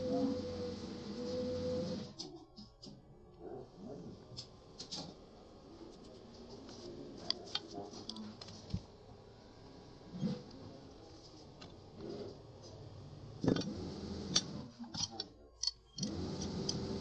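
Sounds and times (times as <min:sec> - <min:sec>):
light clicks of small parts: 0:14.4 - 0:16.8.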